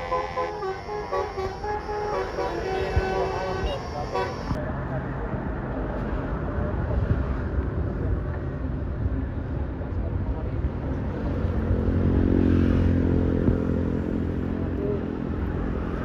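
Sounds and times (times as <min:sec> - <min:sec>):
bus engine hum: 0:00.0 - 0:12.2
road traffic rumbling: 0:00.0 - 0:16.0.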